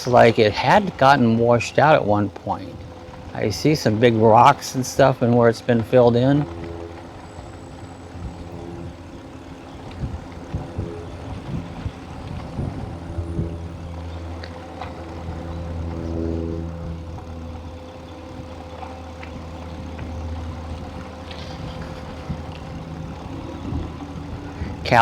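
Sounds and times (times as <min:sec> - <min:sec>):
low motor hum: 0:00.0 - 0:25.0.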